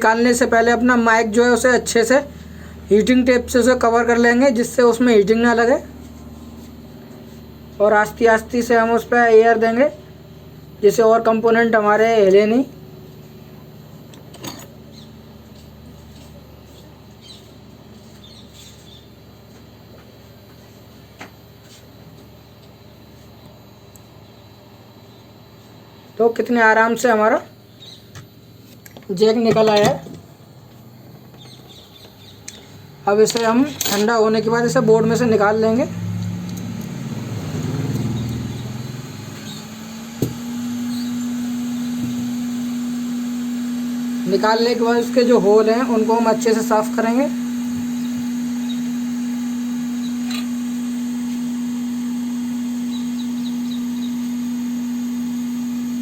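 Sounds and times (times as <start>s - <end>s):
hot air station humming: 0.0s - 56.0s
hot air gun blowing: 37.5s - 56.0s.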